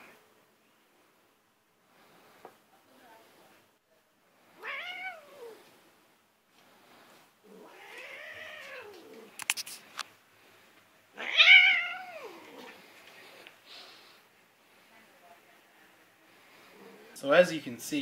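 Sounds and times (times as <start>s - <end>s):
cat meowing: 4.6s - 5.6s, 7.5s - 9.3s, 11.2s - 12.7s.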